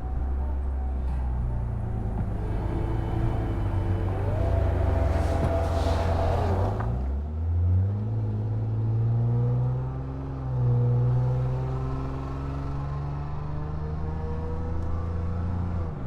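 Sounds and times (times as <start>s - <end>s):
car exhaust drone: 0.0s - 7.2s.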